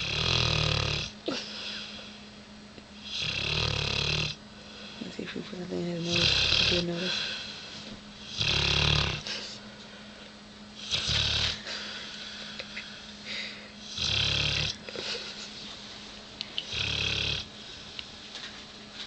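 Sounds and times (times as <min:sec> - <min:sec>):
dog snoring: 0:00.0 - 0:01.9, 0:03.0 - 0:05.1, 0:06.0 - 0:09.4, 0:10.8 - 0:13.0, 0:13.8 - 0:15.1, 0:16.6 - 0:17.9
dog breathing: 0:03.0 - 0:05.4, 0:06.0 - 0:15.6.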